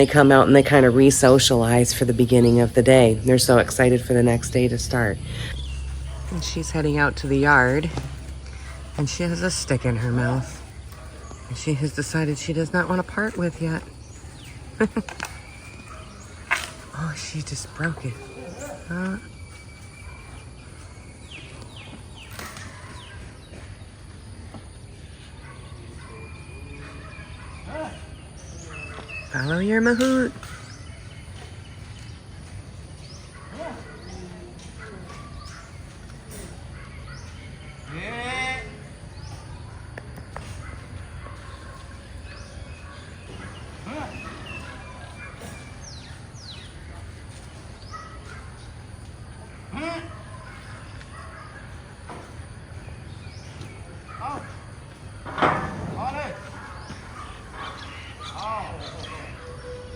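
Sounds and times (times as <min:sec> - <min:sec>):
low outdoor rumble: 0:00.0 - 0:20.2
birds chirping: 0:00.0 - 0:59.9
low background hum: 0:00.0 - 0:59.9.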